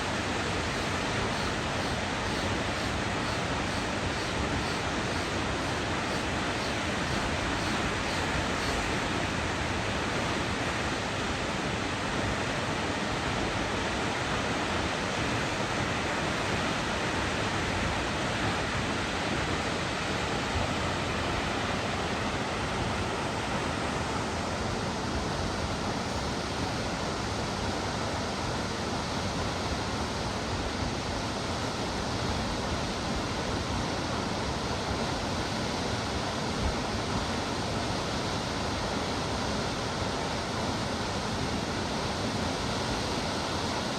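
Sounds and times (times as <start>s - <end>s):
waterfall roaring: 0.0s - 27.8s.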